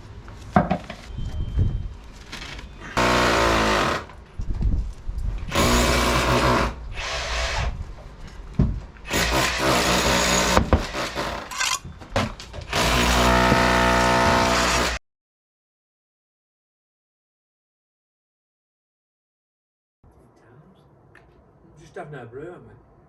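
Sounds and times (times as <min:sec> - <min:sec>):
power tool motor whine: 0:05.5 - 0:07.8, 0:12.7 - 0:15.0.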